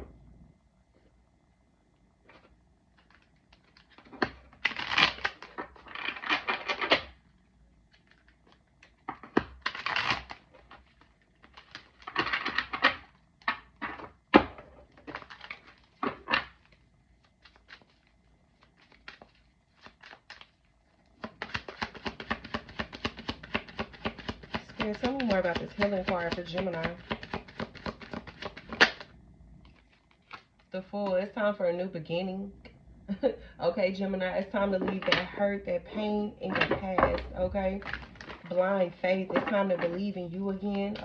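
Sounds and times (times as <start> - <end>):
cards being shuffled: 2.3 - 7.2, 7.8 - 14.1, 14.8 - 31.2.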